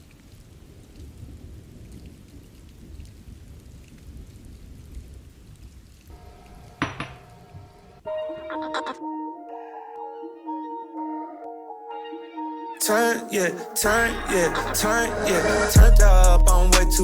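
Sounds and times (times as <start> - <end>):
steady rain: 0.0 - 8.0
sharp ringing knock: 6.8 - 7.2
music: 8.1 - 17.0
low rumble: 13.9 - 17.0.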